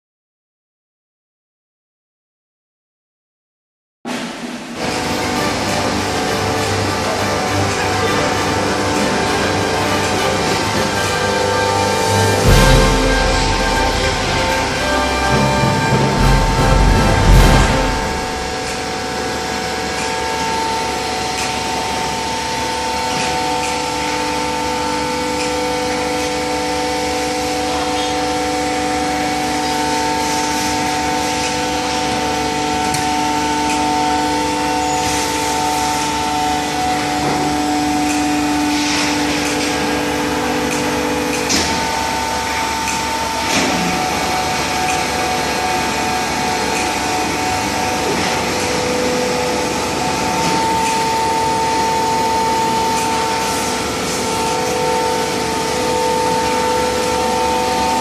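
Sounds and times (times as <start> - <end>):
hydraulic baler whine and hum: 4.1 - 58.0.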